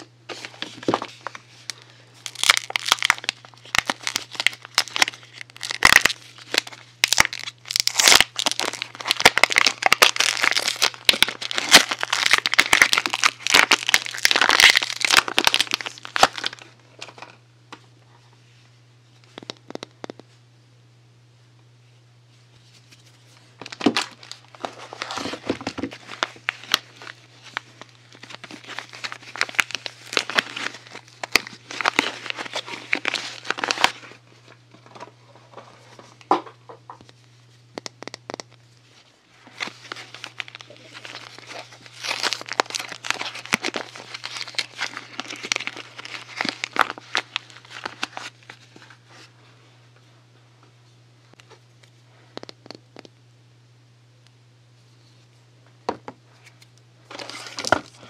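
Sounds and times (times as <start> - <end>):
packaging crinkling: 0.0 - 17.3, 22.6 - 36.1, 39.4 - 49.3, 56.5 - 58.0.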